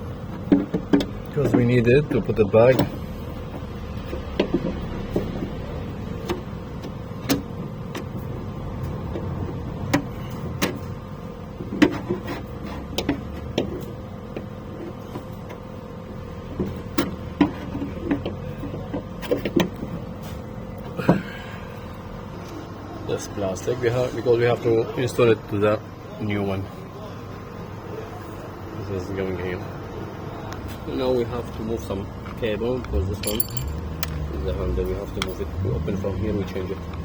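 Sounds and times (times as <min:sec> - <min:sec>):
small lock parts clicking: 0:33.2 - 0:34.3.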